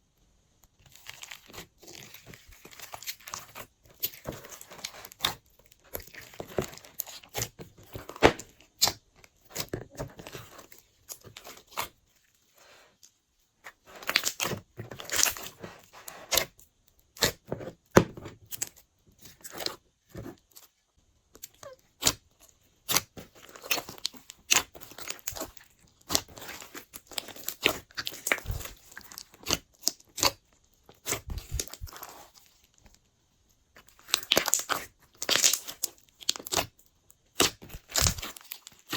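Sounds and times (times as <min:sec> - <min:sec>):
slime popping and crackling: 0:14.0 - 0:15.6, 0:22.8 - 0:30.4, 0:33.8 - 0:36.7, 0:37.3 - 0:38.9.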